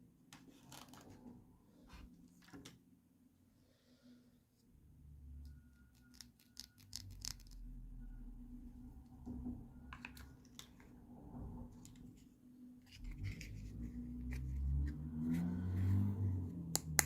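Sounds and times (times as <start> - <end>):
plastic toy pieces clicking: 6.0 - 7.6.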